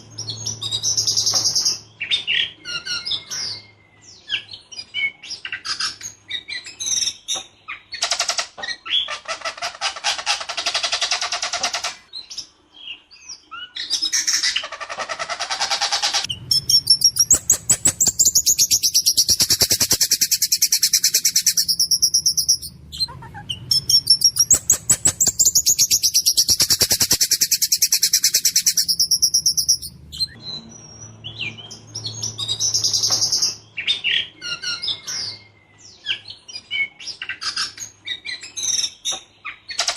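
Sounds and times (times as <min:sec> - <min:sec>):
thrush chirping and trilling: 0:14.1 - 0:30.4
faint low hum: 0:16.3 - 0:30.4.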